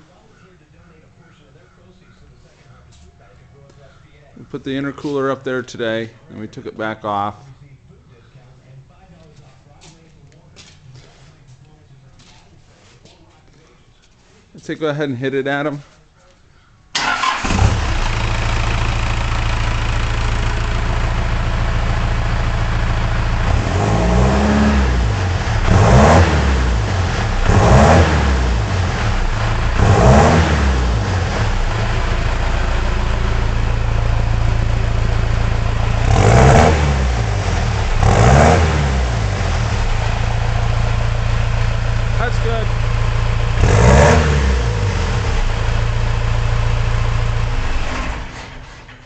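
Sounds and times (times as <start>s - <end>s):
diesel engine idling and revving: 17.0s - 49.0s.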